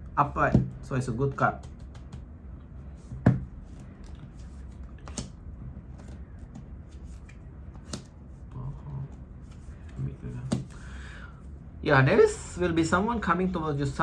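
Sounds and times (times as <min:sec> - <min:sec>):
cards being shuffled: 0:01.6 - 0:02.2, 0:02.9 - 0:08.4.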